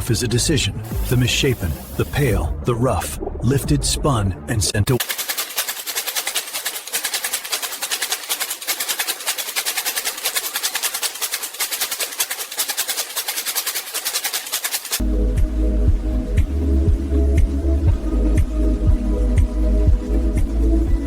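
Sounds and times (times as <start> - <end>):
air jets hissing puffs: 0.8 - 2.4.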